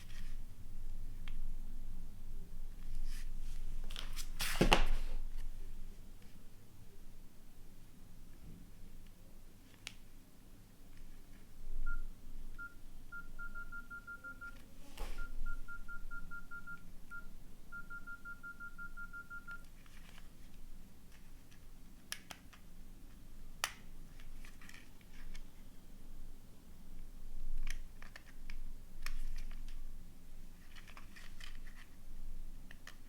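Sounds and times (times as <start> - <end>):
keypad beeps: 11.8 - 14.6, 15.2 - 19.7.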